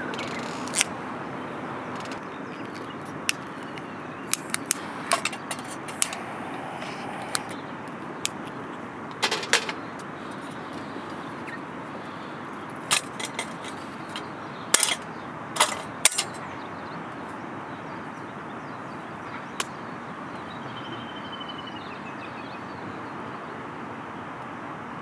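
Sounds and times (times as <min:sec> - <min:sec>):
sharp clicks and knocks: 0:04.3 - 0:06.3, 0:12.9 - 0:15.0, 0:15.6 - 0:16.4
river water rushing: 0:04.5 - 0:07.6.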